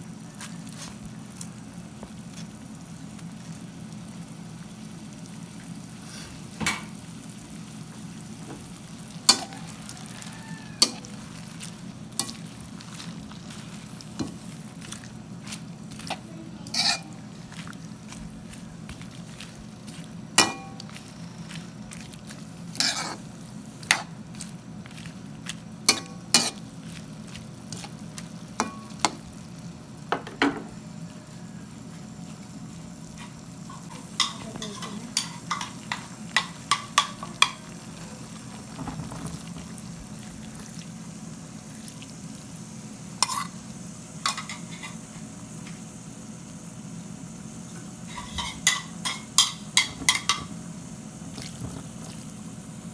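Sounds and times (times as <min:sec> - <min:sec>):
food sizzling in a pan: 0:00.0 - 0:52.9.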